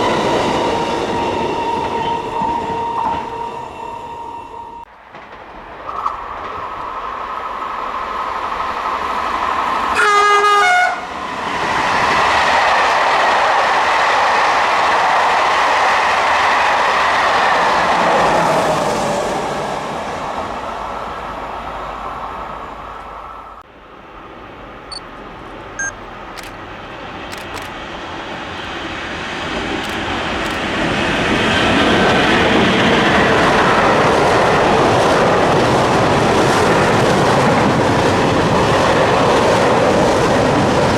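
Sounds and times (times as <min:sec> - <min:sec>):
train passing at speed: 0:00.0 - 0:40.9
wheels rushing on rail: 0:00.0 - 0:40.9
train horn blast: 0:09.9 - 0:11.1.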